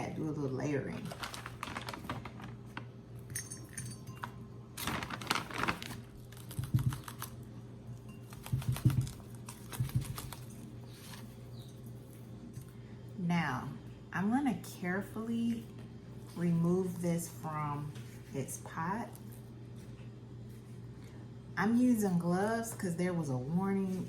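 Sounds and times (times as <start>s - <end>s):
potting mix rattling into pot: 3.4s - 7.2s.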